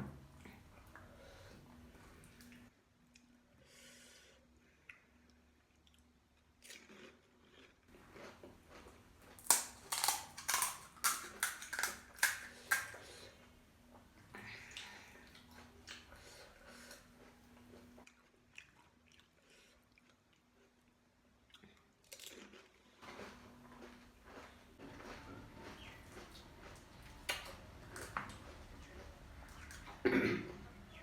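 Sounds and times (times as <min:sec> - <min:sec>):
crunchy food chewing: 0:06.6 - 0:13.2, 0:16.7 - 0:30.6.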